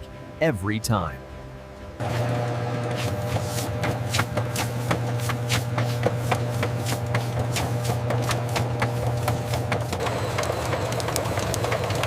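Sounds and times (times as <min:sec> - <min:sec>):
popcorn machine humming: 0:02.0 - 0:12.0
popcorn clicking and rattling: 0:05.9 - 0:12.0.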